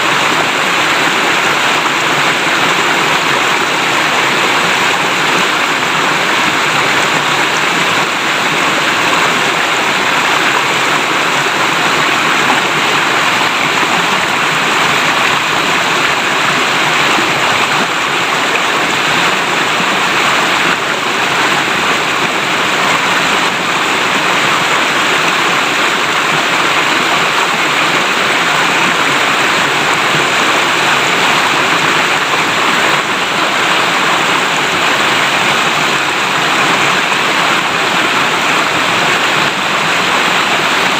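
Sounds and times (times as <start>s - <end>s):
river water babbling: 0.0s - 40.9s.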